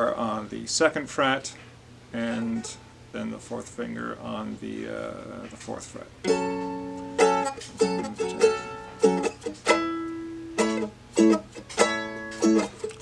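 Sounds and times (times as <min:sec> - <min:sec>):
strummed dulcimer chords: 0:06.2 - 0:13.0.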